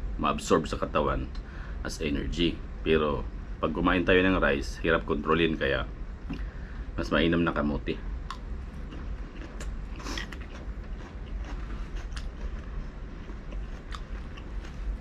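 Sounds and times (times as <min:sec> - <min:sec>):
low hum: 0:00.0 - 0:15.0
person chewing food: 0:08.2 - 0:15.0.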